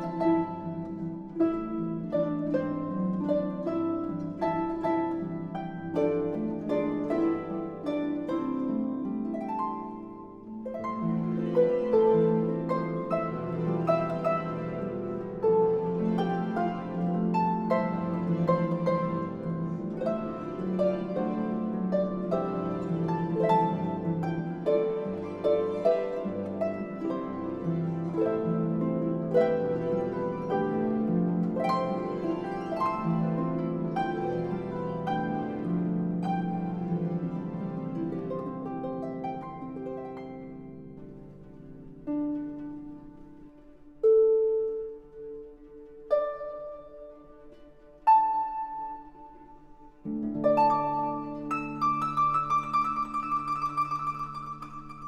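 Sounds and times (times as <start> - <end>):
harp music: 0.0 - 55.0.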